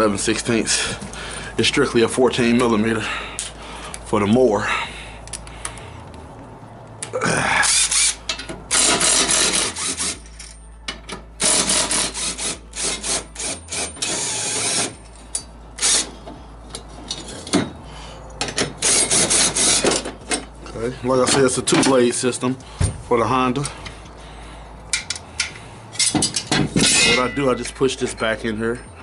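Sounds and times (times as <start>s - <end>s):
wrench rasping and clicking: 7.7s - 17.7s, 18.4s - 20.6s, 24.9s - 27.2s.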